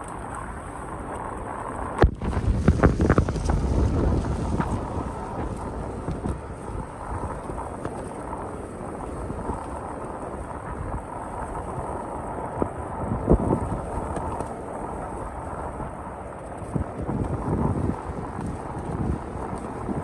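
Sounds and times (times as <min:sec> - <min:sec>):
wind buffeting microphone: 0:00.0 - 0:20.0
street noise rumble: 0:02.0 - 0:16.1.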